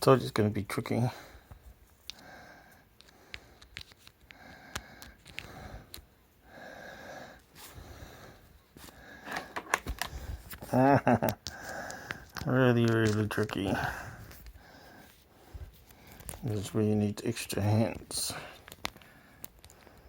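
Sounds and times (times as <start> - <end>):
small clicks and taps: 3.0 - 6.1, 11.2 - 13.6, 18.6 - 20.0.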